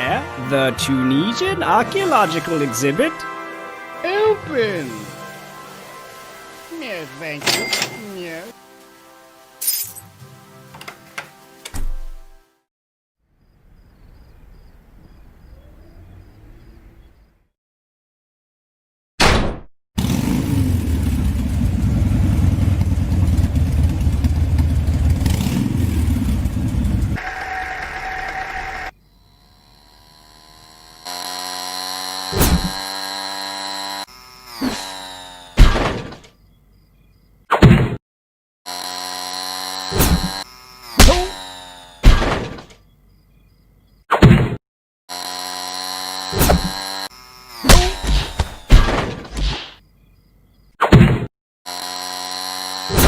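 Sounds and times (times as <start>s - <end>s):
buzzy tone sliding down: 0.6s - 9.5s
motor scooter engine running: 20.0s - 35.6s, 38.7s - 42.0s, 45.1s - 48.7s, 51.7s - 53.0s
loud thuds and crashes: 35.6s - 36.2s, 42.0s - 42.7s, 47.7s - 49.8s.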